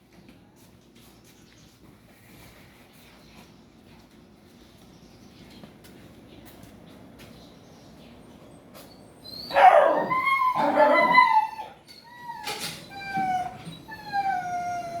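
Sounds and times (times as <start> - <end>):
dog howling and whining: 9.2 - 15.0.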